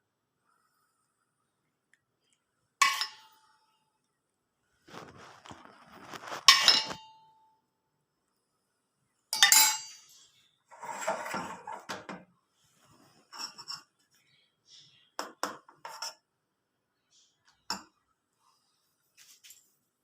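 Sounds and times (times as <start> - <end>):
dishes and utensils clinking: 2.8 - 3.4, 6.4 - 7.3, 9.4 - 10.2, 13.3 - 14.0
soft clattering and scraping: 4.8 - 7.0, 10.1 - 14.4
sharp ringing clinks: 9.4 - 10.2.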